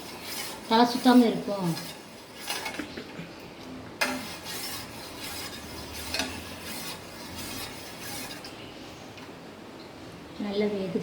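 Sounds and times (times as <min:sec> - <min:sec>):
spoon scraping a pot: 0:00.0 - 0:02.9, 0:04.0 - 0:08.6.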